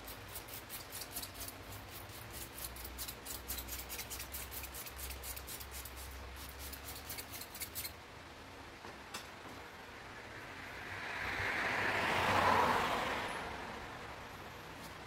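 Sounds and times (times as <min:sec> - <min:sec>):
quick scrubbing strokes: 0:00.0 - 0:07.9.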